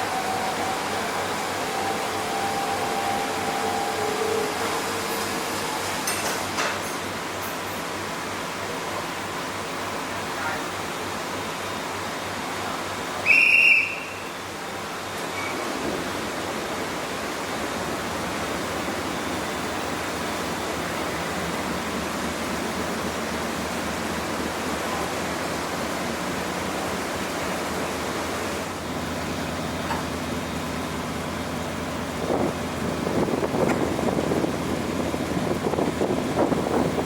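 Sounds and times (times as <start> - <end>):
wind: 0.0 - 37.0
water rushing: 12.5 - 37.0.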